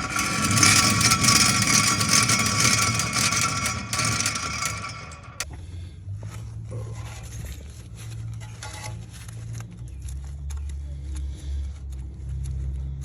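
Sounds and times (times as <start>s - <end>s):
wheel bearing grinding with whine: 0.0s - 5.4s.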